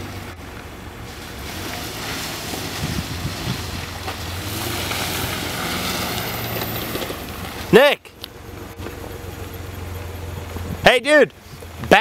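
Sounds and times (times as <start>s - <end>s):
car engine running: 0.0s - 12.0s
wind noise on microphone: 2.4s - 4.8s, 10.5s - 10.9s.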